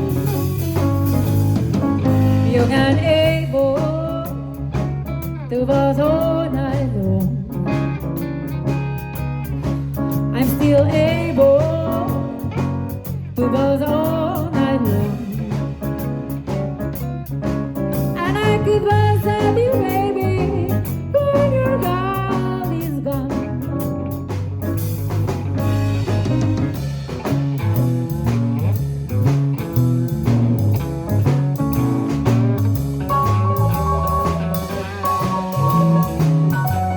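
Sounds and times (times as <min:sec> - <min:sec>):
bass and drum groove: 0:00.0 - 0:36.9
live jazz blues band: 0:00.0 - 0:36.9
lead melody bending in pitch: 0:33.1 - 0:36.9.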